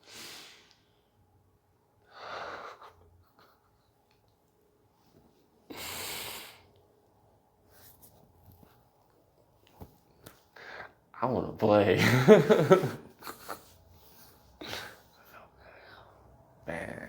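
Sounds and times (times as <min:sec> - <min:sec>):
person breathing: 0:05.7 - 0:06.8, 0:10.5 - 0:11.0, 0:14.0 - 0:16.4.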